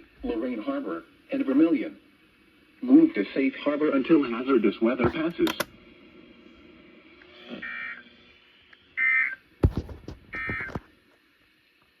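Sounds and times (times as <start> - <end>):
sharp clicks: 5.2 - 5.7.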